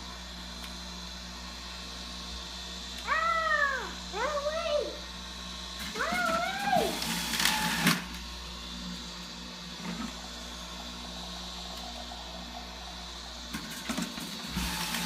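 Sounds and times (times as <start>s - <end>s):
electric juicer motor running: 0.0s - 15.0s.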